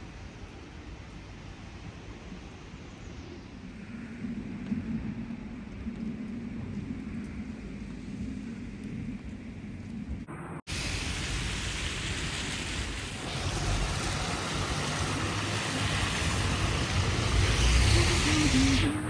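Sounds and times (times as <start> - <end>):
traffic hiss: 10.3 - 19.0
low engine rumble: 12.3 - 19.0.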